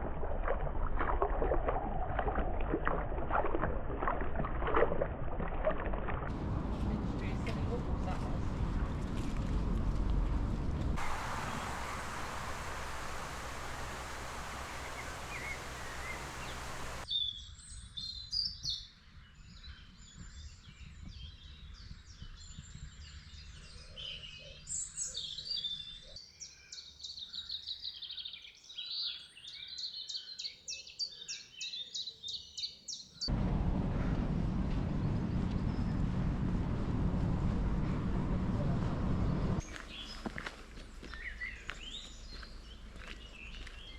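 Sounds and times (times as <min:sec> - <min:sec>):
steady rushing noise: 0:11.0 - 0:17.0
small birds singing: 0:11.0 - 0:33.3, 0:39.6 - 0:43.9
fast bird trill: 0:11.1 - 0:17.0.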